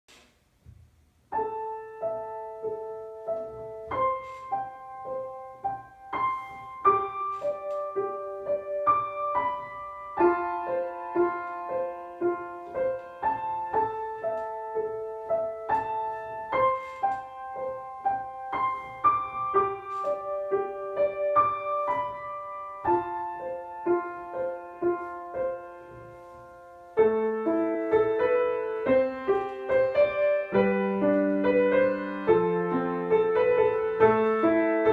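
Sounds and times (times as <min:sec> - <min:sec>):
keyboard melody: 0:01.3 - 0:34.9.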